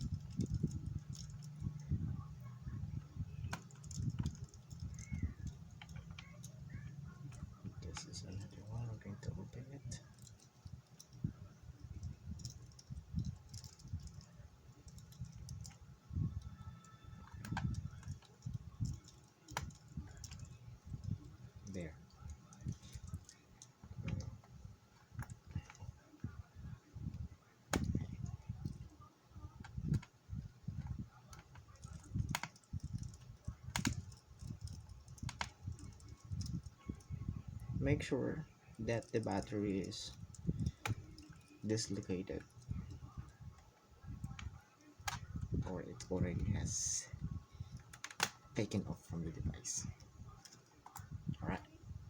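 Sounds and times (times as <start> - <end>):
sharp plastic clicks: 3.4 - 8.2, 17.2 - 25.9, 27.1 - 28.8, 30.7 - 37.2, 44.2 - 45.7, 47.6 - 48.9.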